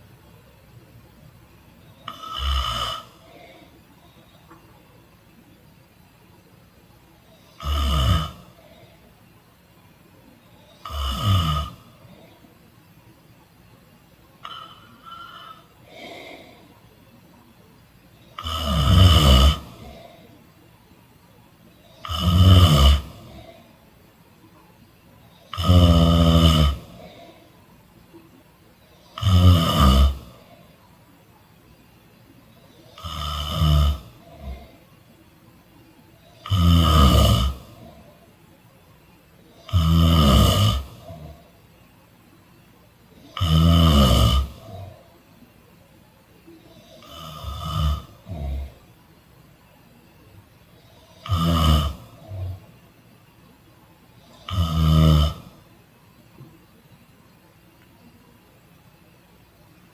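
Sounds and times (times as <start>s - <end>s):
soft breaths: 0.0s - 59.9s
person snoring: 2.0s - 3.8s, 7.4s - 9.0s, 10.6s - 12.4s, 14.4s - 16.8s, 18.2s - 20.4s, 21.8s - 23.7s, 25.4s - 27.6s, 29.0s - 30.7s, 32.7s - 34.8s, 36.2s - 38.2s, 39.5s - 41.5s, 43.2s - 45.1s, 46.5s - 48.8s, 50.8s - 52.7s, 54.2s - 55.7s.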